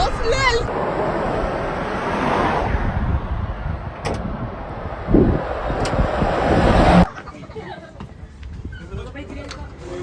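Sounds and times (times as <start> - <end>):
road and engine noise: 0.0 - 10.0
low thump: 2.7 - 7.1.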